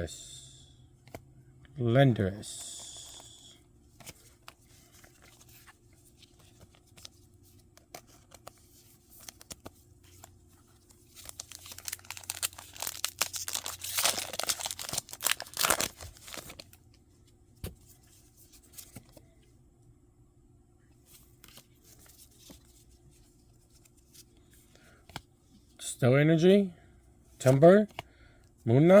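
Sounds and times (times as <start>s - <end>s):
foil wrapper crinkling and tearing: 10.9s - 16.8s.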